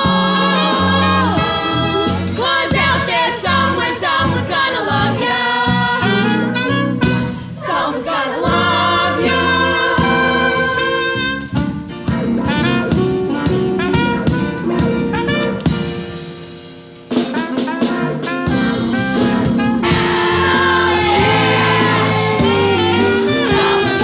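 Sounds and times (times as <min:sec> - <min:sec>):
children singing together: 0:00.0 - 0:06.1, 0:07.6 - 0:11.4, 0:20.1 - 0:24.0
band accompaniment with bass and drums: 0:00.0 - 0:07.6, 0:08.4 - 0:24.0.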